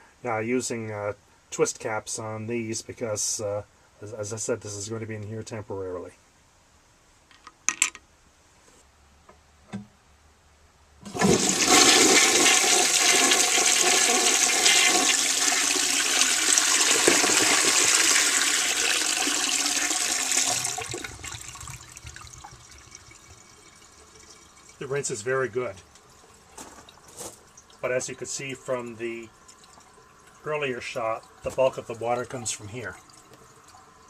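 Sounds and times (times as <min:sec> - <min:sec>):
toilet flushing water rush: 0:11.0 - 0:34.0.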